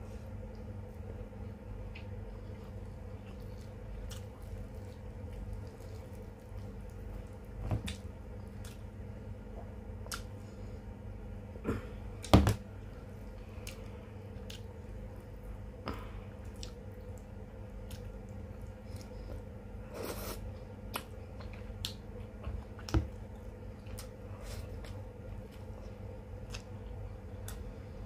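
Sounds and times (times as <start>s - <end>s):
steady low hum: 0.0s - 28.0s
moist chewing: 1.9s - 8.8s, 16.4s - 19.4s.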